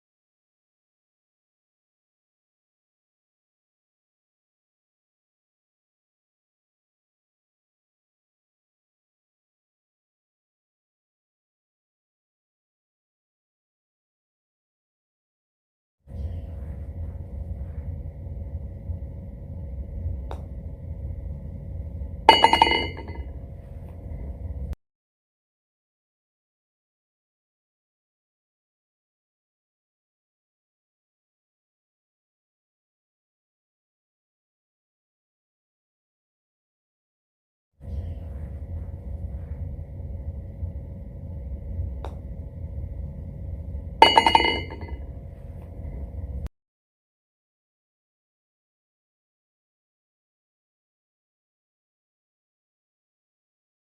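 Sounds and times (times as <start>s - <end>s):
low background rumble: 16.1s - 24.8s, 37.8s - 46.5s
golf ball clinking into cup: 22.3s - 23.2s, 44.0s - 44.9s.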